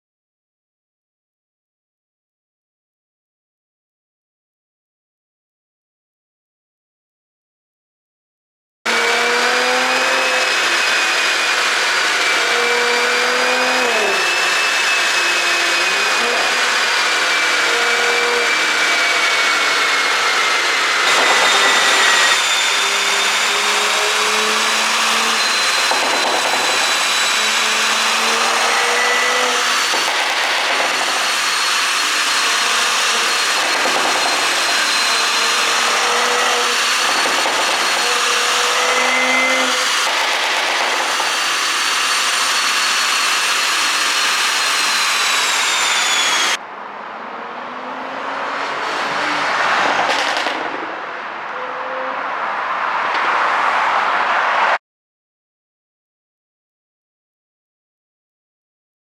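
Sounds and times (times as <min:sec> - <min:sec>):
car engine revving: 0:08.9 - 0:54.8.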